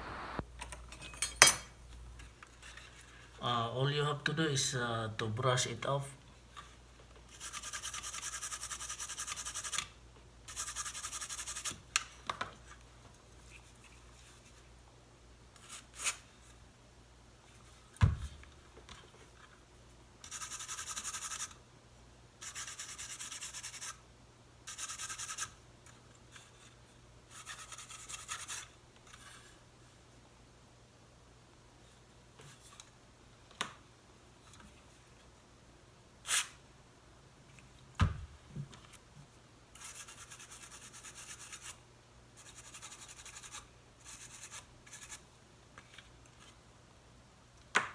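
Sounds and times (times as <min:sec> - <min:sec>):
small brush scrubbing circuit board: 0:20.3 - 0:21.6, 0:27.3 - 0:28.7, 0:39.8 - 0:41.8, 0:42.4 - 0:45.2.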